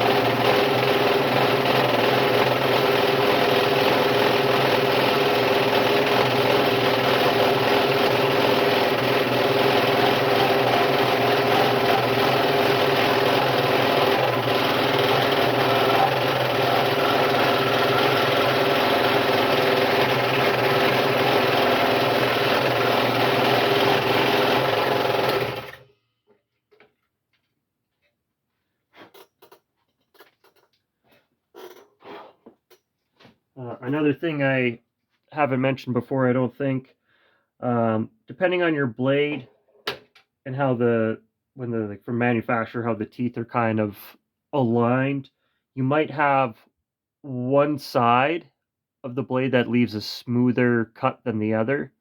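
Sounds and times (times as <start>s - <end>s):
scroll saw cutting wood: 0.0s - 25.9s.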